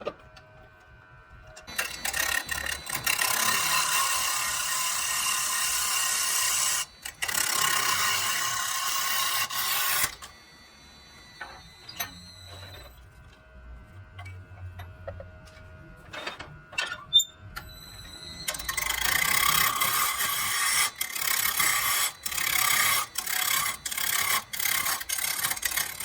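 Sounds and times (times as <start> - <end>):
wood lathe hissing: 1.7 - 12.0, 18.5 - 26.0.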